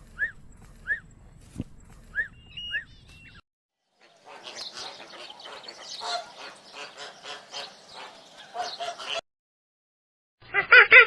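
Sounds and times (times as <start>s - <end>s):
chatter of bird calls: 2.2s - 9.2s.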